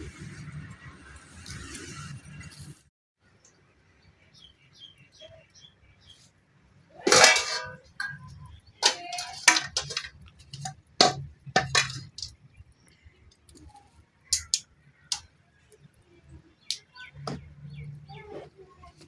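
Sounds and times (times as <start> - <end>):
metal pot ringing clank: 7.0 - 12.3
utensils clinking and knocking: 7.0 - 12.4.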